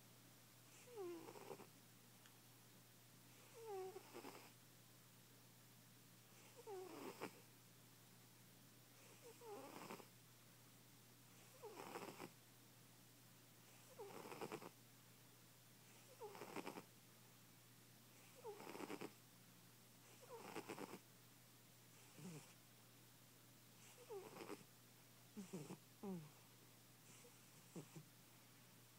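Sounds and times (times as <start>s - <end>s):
cat snoring: 0.7s - 1.7s, 3.3s - 4.6s, 6.4s - 7.4s, 9.0s - 10.1s, 11.4s - 12.3s, 13.6s - 14.8s, 15.9s - 16.9s, 18.2s - 19.2s, 20.0s - 21.0s, 21.9s - 22.6s, 23.8s - 24.7s, 25.4s - 26.4s, 27.0s - 28.0s.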